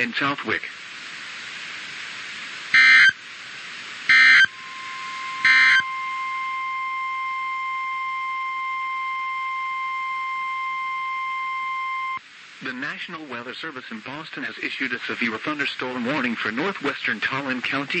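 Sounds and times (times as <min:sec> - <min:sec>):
digital data tone bursts: 0:02.8 - 0:03.2, 0:04.1 - 0:12.2.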